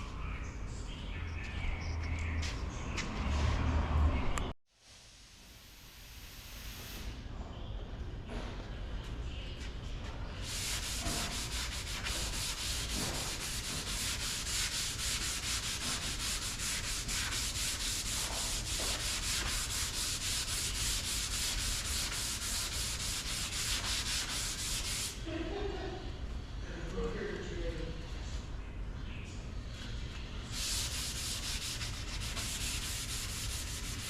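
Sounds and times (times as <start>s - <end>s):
sandpaper sanding: 10.4s - 25.2s, 30.5s - 34.0s.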